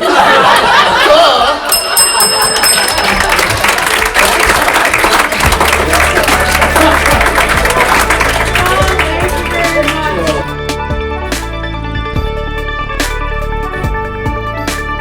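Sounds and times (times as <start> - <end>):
audience applauding: 0.0 - 10.5
audience laughing: 0.0 - 10.5
high bell ringing: 1.7 - 4.2
music with steady bass line: 5.3 - 15.0.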